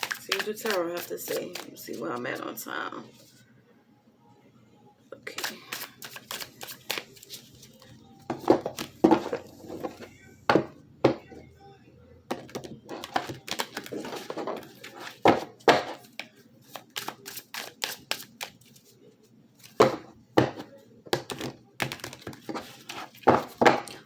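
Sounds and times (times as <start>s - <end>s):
cards being shuffled: 0.0s - 2.2s, 5.4s - 10.1s, 12.5s - 18.9s, 21.2s - 24.0s.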